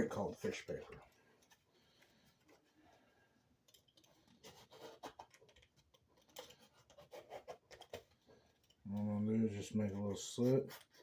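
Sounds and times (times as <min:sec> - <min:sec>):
paper and small parts handled: 0:00.0 - 0:02.8, 0:03.6 - 0:09.2.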